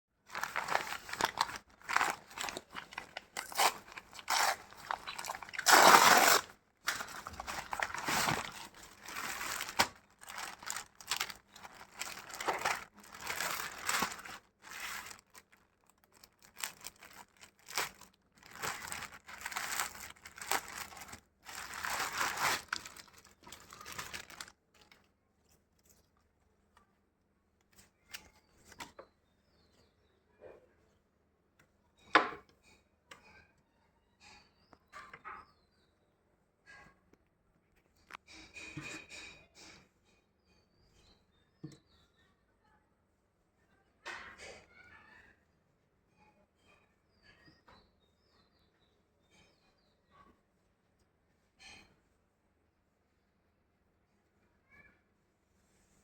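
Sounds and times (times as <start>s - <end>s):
packaging torn and crinkled: 0.3s - 25.0s.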